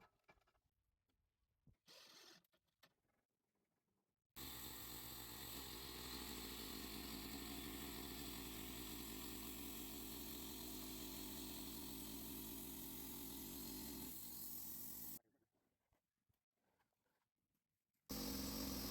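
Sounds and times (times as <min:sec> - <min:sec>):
sawmill gas engine running: 0:04.4 - 0:15.2, 0:18.1 - 0:18.9.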